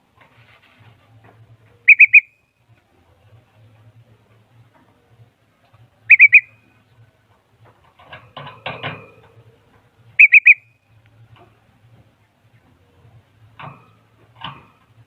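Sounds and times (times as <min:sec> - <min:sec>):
bird whistled notes: 0:01.9 - 0:02.5, 0:06.1 - 0:06.8, 0:10.2 - 0:10.8.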